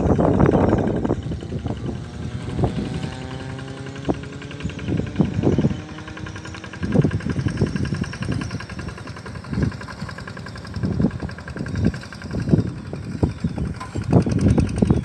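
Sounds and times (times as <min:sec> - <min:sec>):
small engine rattling: 0:00.0 - 0:15.0.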